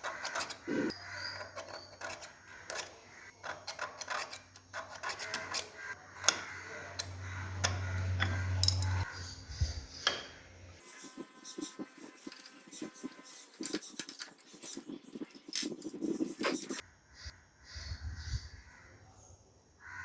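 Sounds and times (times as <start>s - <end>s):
metal parts clicking and tapping: 0.0s - 9.1s, 12.0s - 16.8s.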